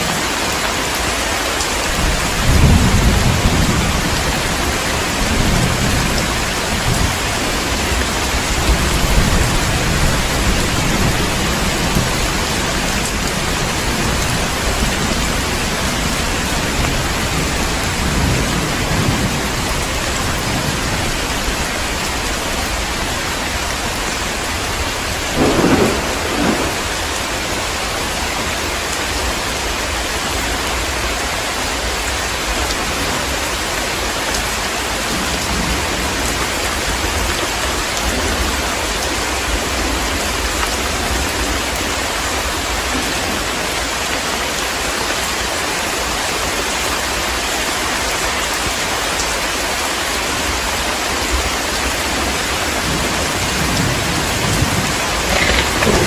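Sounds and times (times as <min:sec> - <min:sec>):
heavy rain: 0:00.0 - 0:56.0
thunder rumble: 0:01.9 - 0:29.2, 0:52.2 - 0:56.0.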